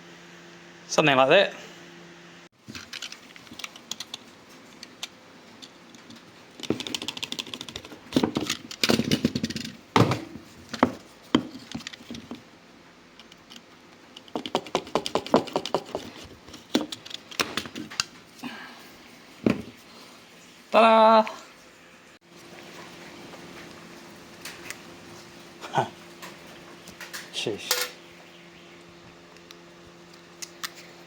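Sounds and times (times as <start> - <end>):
hand tools clicking and rattling: 2.7 - 9.8.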